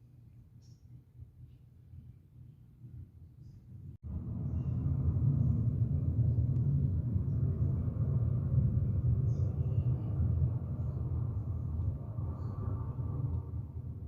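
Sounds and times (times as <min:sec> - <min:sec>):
jet engines roaring: 0:04.1 - 0:14.0.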